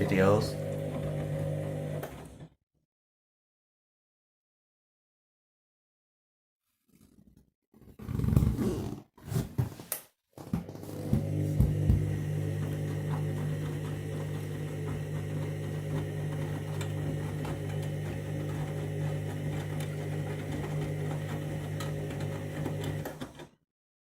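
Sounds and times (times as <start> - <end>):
washing machine drum motor humming: 0.0 - 2.2, 10.9 - 23.4.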